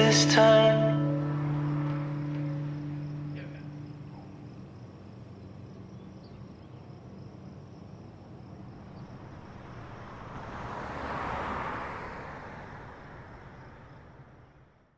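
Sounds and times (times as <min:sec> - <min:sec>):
low hum: 0:00.0 - 0:05.4
vehicle passing: 0:00.0 - 0:06.6, 0:07.4 - 0:14.9
insects chirping: 0:00.0 - 0:14.9.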